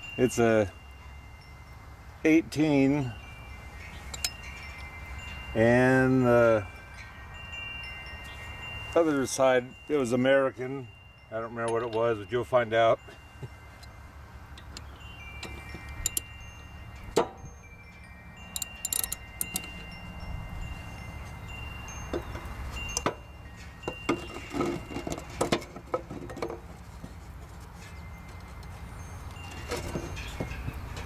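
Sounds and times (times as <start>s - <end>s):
wrench clinking on metal: 4.0s - 5.0s, 11.5s - 12.6s, 13.8s - 20.1s.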